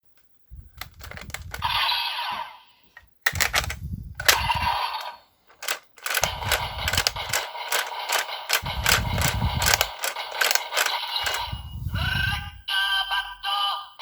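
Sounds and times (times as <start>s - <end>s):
plastic toy gun clicks: 0.8s - 1.8s, 3.3s - 11.5s.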